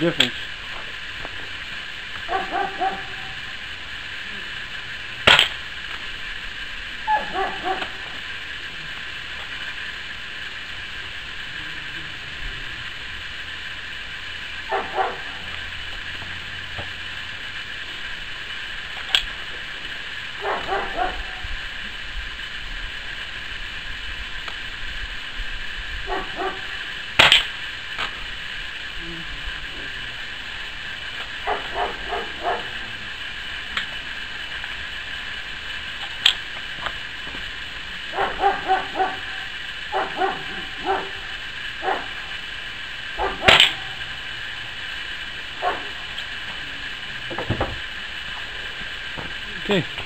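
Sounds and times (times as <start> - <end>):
dog barking: 2.3 - 3.4, 7.1 - 8.0, 14.7 - 15.4, 20.4 - 21.4, 26.1 - 26.7, 31.4 - 32.8, 38.1 - 41.2, 41.8 - 42.1, 43.2 - 43.9, 45.6 - 45.9
air rifle shots: 5.2 - 5.6, 27.2 - 27.6.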